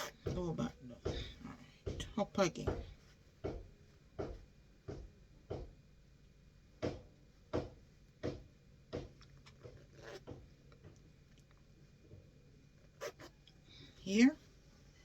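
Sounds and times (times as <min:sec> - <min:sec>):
zipper rasping: 0:00.0 - 0:00.2, 0:09.7 - 0:10.4, 0:12.9 - 0:13.4.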